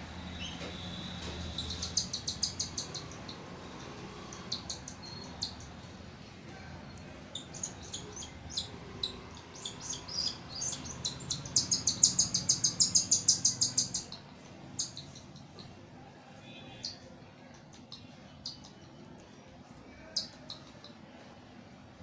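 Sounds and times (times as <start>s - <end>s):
cockatiel chick chirping: 7.3s - 14.2s.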